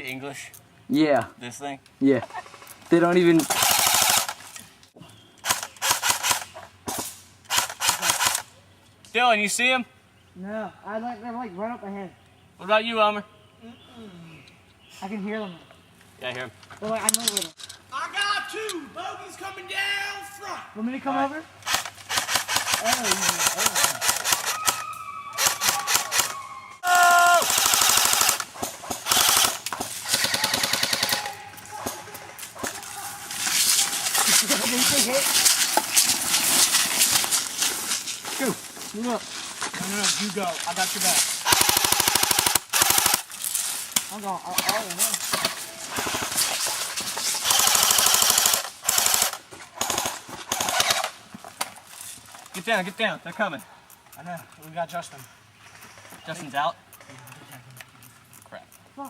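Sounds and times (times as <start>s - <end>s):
airsoft guns firing bursts: 3.4s - 4.4s, 5.4s - 8.5s, 21.6s - 24.8s, 25.4s - 26.4s, 27.2s - 32.8s, 40.8s - 43.3s, 44.5s - 51.2s.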